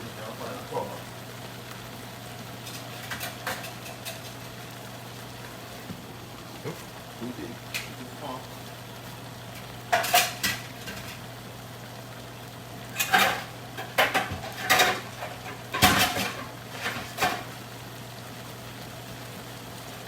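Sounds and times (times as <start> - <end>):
pot lid clanking on pan: 13.0 - 17.4.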